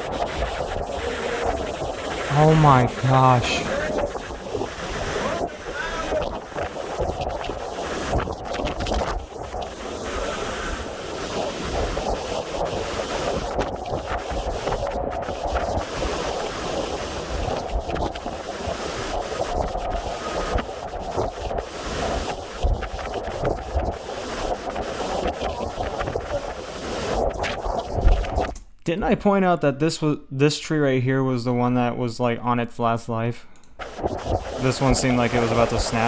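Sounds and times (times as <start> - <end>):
hurricane-force wind buffeting microphone: 3.6 - 28.5.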